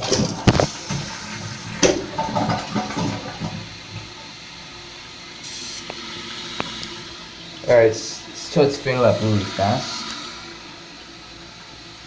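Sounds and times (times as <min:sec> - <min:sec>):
toilet flush clunk: 0:00.0 - 0:04.2
fill valve hissing: 0:00.0 - 0:12.0.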